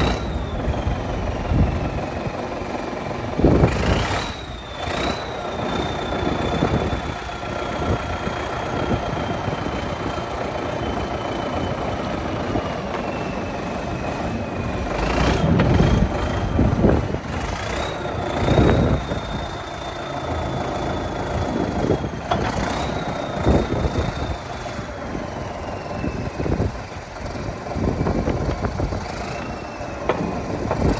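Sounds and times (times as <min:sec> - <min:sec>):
diesel engine running with whine: 0:00.0 - 0:30.9
loud knocks: 0:30.0 - 0:30.9.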